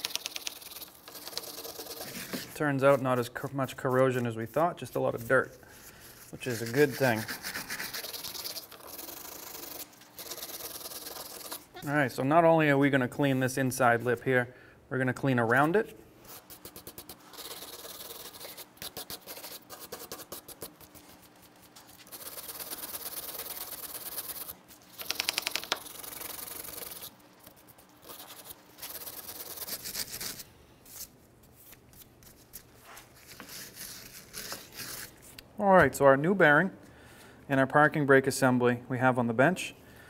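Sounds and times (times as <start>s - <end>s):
wire brush scrubbing metal: 0.0s - 11.8s.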